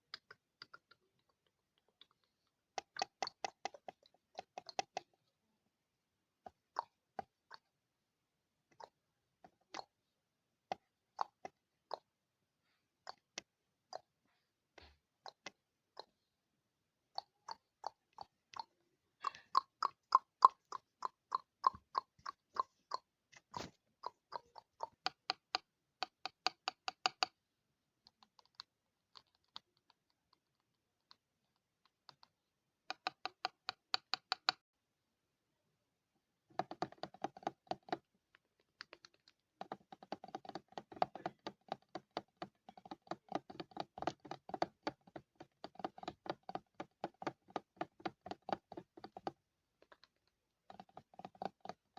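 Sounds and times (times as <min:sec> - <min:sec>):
fingers tapping on glass: 0:24.0 - 0:27.4, 0:36.5 - 0:38.0, 0:38.8 - 0:49.4.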